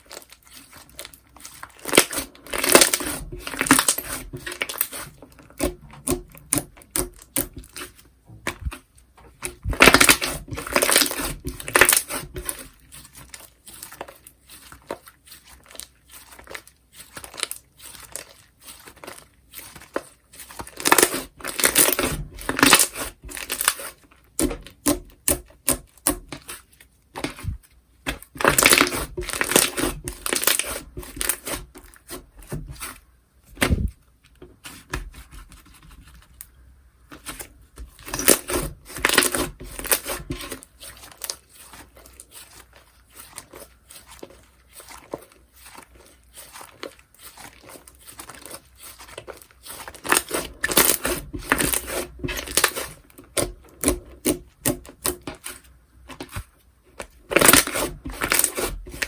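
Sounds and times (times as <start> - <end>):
slime squishing and popping: 37.1 - 59.0.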